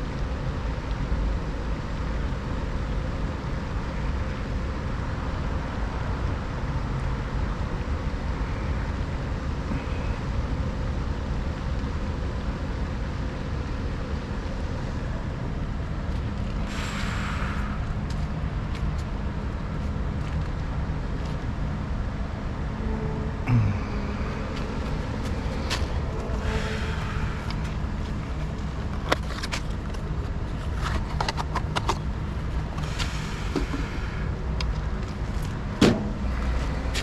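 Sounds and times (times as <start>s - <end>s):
air conditioning unit rumbling: 0.0s - 37.0s
sharp hiss: 16.6s - 18.0s, 32.8s - 34.3s.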